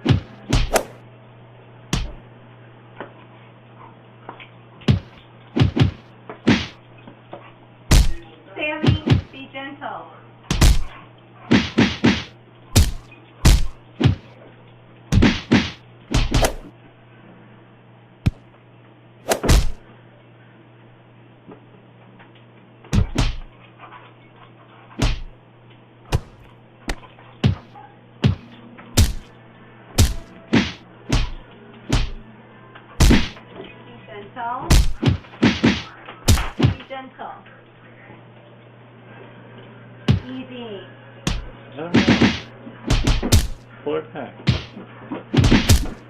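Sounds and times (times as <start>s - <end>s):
cat and dog tussling thumps: 7.9s - 9.4s, 10.5s - 14.3s, 22.9s - 23.5s, 26.1s - 29.3s, 30.0s - 32.2s.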